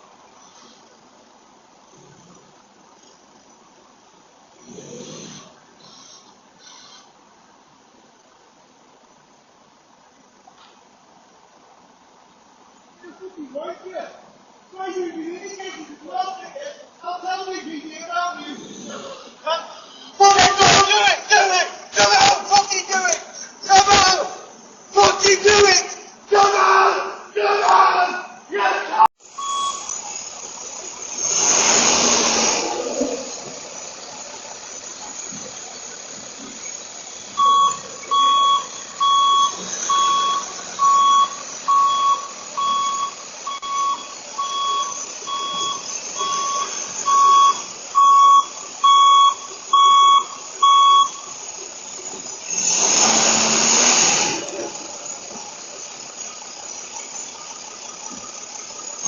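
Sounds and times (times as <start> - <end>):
electronic beeper tone: 29.3 - 30.3, 32.2 - 51.4
rushes of noise: 29.3 - 43.6.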